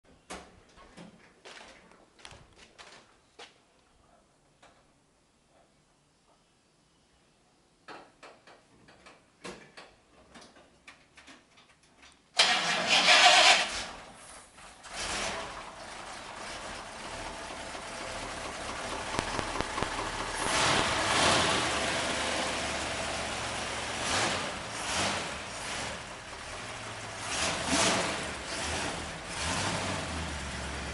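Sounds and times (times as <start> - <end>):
truck engine starting and revving: 12.4 - 30.9
engine rumbling idle: 13.9 - 30.9.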